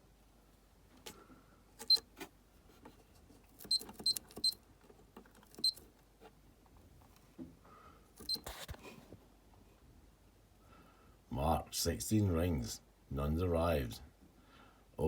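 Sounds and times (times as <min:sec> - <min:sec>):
electronic clock beeping: 0:03.7 - 0:04.6.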